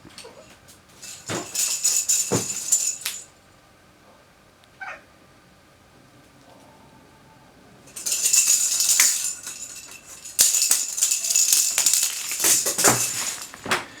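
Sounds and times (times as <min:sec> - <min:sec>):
rattle ball toy beads rattling: 0:01.0 - 0:03.2, 0:07.9 - 0:13.6.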